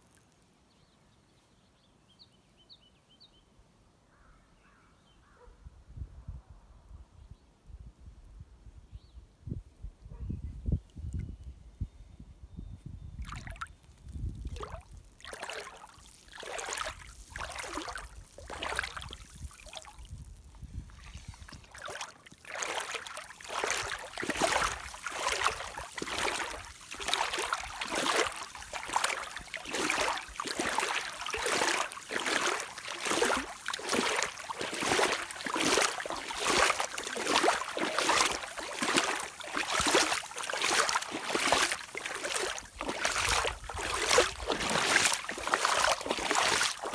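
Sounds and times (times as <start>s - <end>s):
rain boots sloshing through water: 13.2s - 46.9s.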